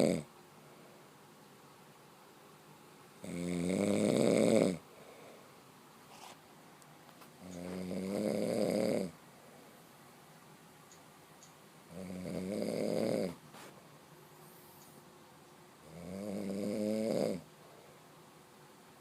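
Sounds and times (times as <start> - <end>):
person snoring: 0.0 - 0.3, 3.2 - 4.8, 7.5 - 9.2, 11.9 - 13.4, 15.8 - 17.5.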